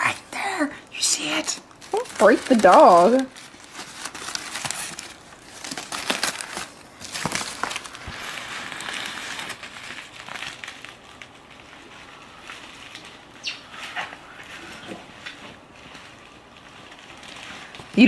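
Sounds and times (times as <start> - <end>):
packaging crinkling and rustling: 0.0 - 18.0
packaging tearing: 1.2 - 13.3.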